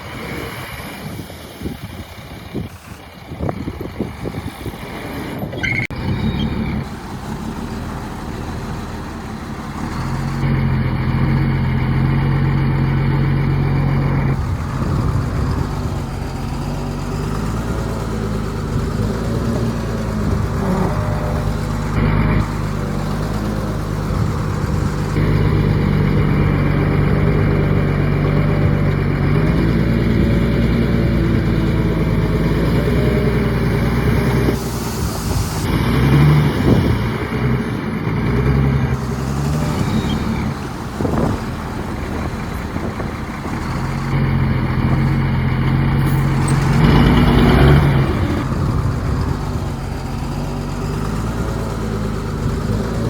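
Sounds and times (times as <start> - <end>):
heavy diesel engines revving: 0.0 - 53.0
short air hisses: 34.6 - 36.0.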